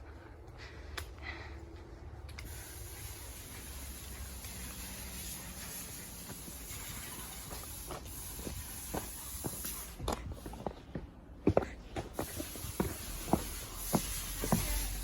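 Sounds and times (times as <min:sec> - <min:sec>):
low hiss: 0:02.2 - 0:10.1.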